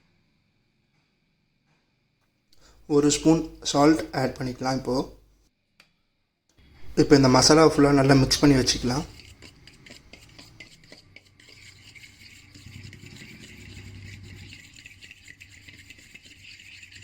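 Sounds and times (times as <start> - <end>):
spoon scraping a cup: 6.8 - 17.0.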